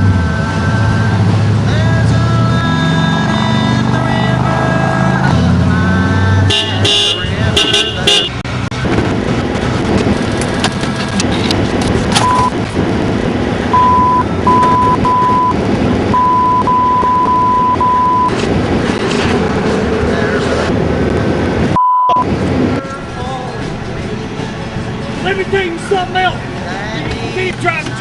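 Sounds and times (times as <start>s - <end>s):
car sound: 0.0s - 28.0s
censor bleeps: 12.2s - 12.5s, 13.8s - 15.6s, 16.2s - 18.3s, 21.8s - 22.3s.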